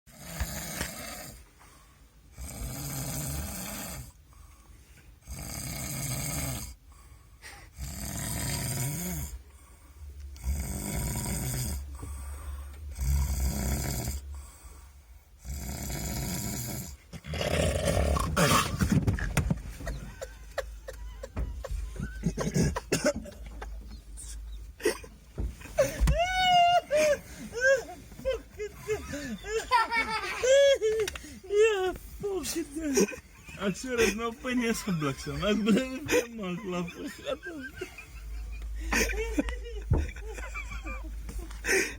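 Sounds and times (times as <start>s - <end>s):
person snoring: 0.1s - 1.4s, 2.3s - 4.2s, 5.2s - 6.8s, 7.6s - 9.4s, 10.4s - 14.6s, 15.4s - 18.8s.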